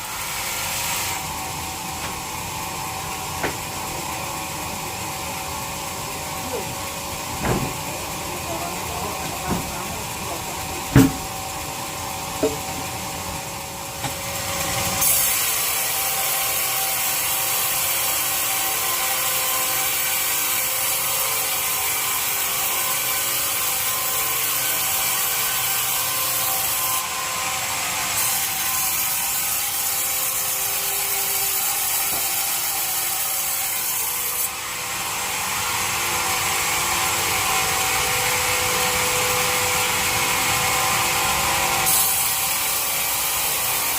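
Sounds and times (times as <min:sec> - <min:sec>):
bandsaw blade hissing through wood: 0:00.0 - 0:01.5
machine hum: 0:01.2 - 0:15.0
sharp knocks: 0:03.4 - 0:03.7, 0:07.4 - 0:07.9, 0:10.9 - 0:11.4.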